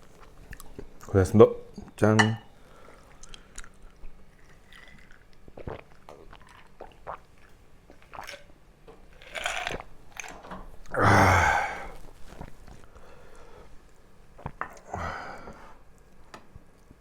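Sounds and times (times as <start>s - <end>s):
person biting and chewing: 9.2s - 13.4s.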